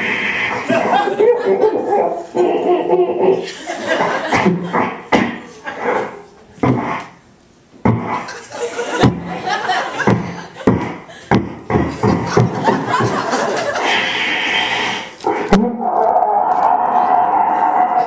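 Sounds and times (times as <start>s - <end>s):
man making vocal sound effects: 0.8s - 3.5s.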